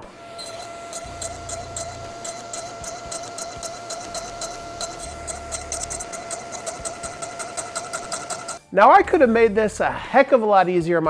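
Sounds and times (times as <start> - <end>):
quick ticking beat: 0.0 - 8.7.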